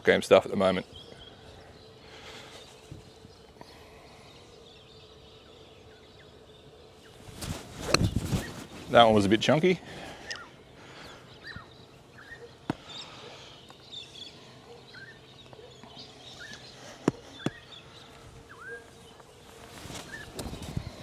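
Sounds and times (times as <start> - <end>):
birds chirping: 0.0 - 21.0
golf club striking ball: 7.6 - 8.2.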